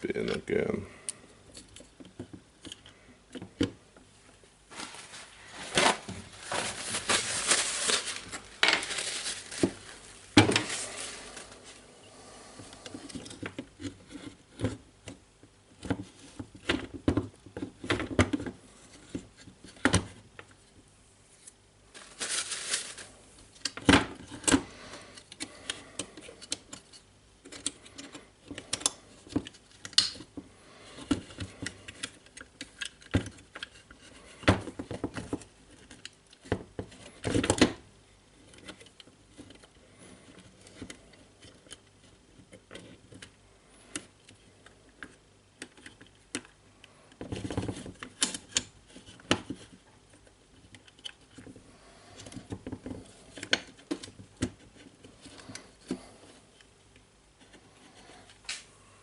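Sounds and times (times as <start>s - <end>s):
small parts clicking and tapping: 25.2s - 30.4s.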